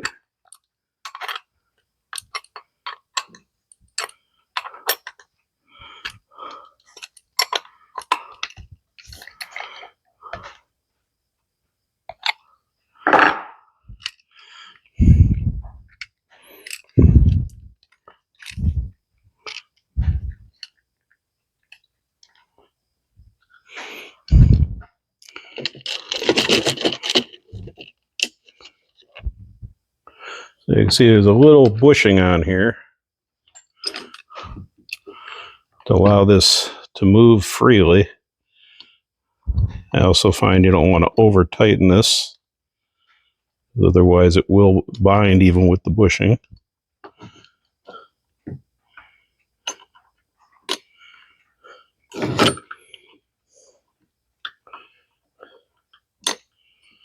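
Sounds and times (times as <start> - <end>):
small metal parts scraping and clicking: 16.0 - 18.7, 25.2 - 29.2.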